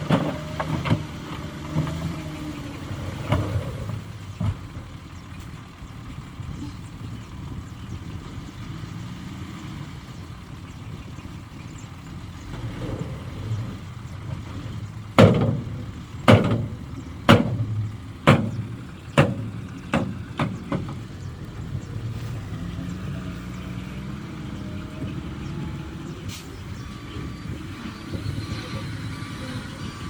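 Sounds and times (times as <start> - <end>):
construction machinery engine: 0.0 - 30.0
sharp bangs: 15.1 - 21.2.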